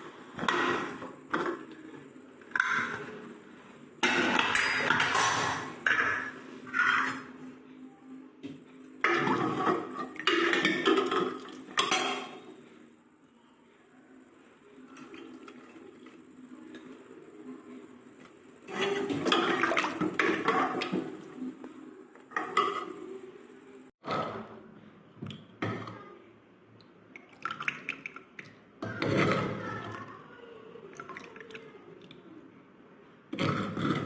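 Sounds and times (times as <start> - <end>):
soup pouring and splashing: 27.2 - 28.5.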